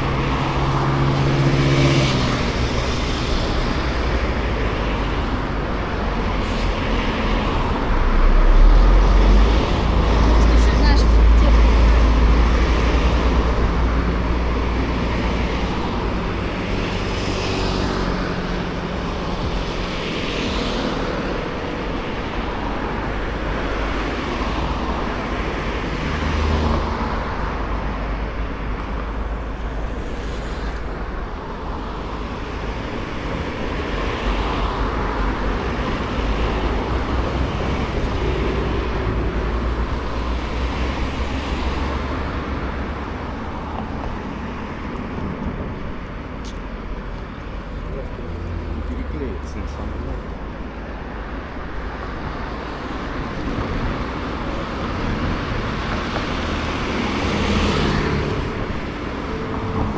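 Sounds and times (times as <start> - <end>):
road vehicles passing: 0.0 - 59.9.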